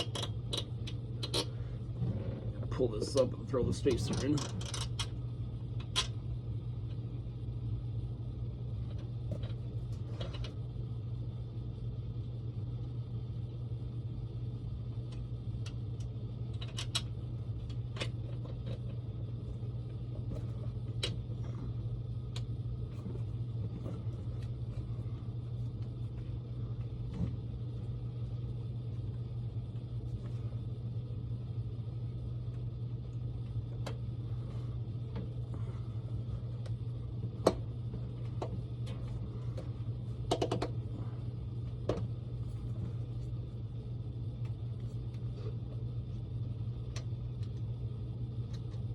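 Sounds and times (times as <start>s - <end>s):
low machinery hum: 0.0s - 48.9s.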